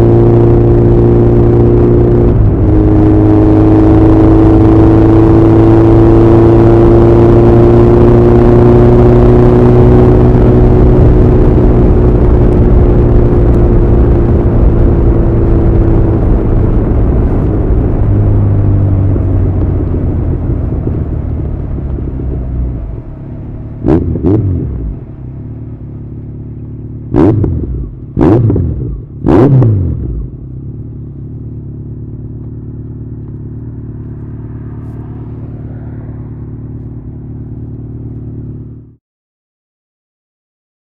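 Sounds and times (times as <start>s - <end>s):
motorcycle throttle blips: 8.3s - 38.9s
motorcycle engine idling: 24.8s - 27.2s, 30.2s - 39.0s.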